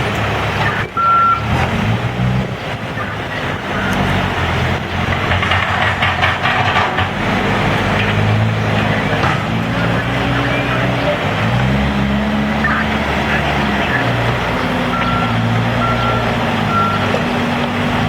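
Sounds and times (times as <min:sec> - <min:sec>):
diesel engine working: 0:00.0 - 0:18.0
high beep: 0:00.6 - 0:01.4, 0:03.0 - 0:04.1, 0:14.9 - 0:17.2
rattling clatter: 0:01.5 - 0:18.0.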